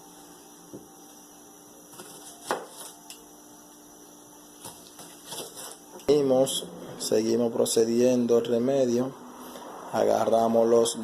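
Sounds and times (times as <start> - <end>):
steady low hum: 0.0 - 11.0
knife chopping on cutting board: 1.9 - 2.9, 4.6 - 5.8.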